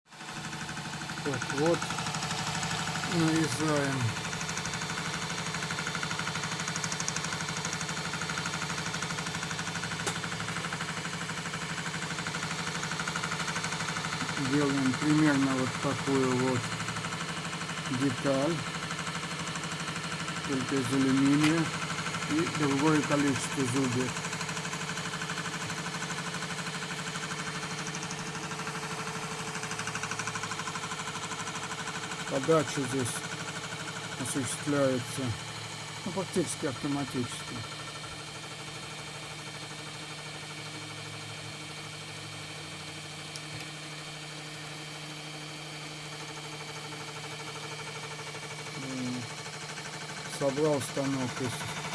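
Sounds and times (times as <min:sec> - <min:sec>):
machine tool milling metal: 0:00.3 - 0:51.9.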